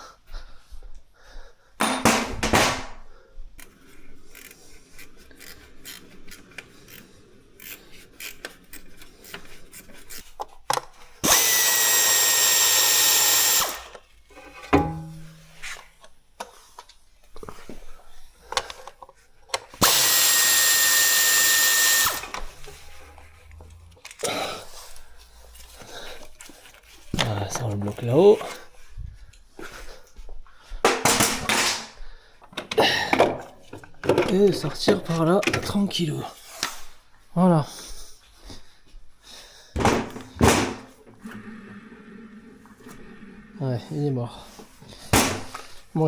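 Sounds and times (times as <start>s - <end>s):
tools clicking and knocking: 1.8s - 3.7s, 13.3s - 15.5s, 30.9s - 35.8s
power drill whining: 11.2s - 14.5s, 19.7s - 26.3s.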